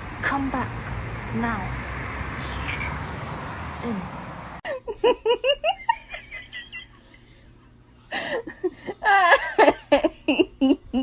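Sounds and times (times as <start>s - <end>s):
person giggling: 4.6s - 7.2s, 8.1s - 11.0s.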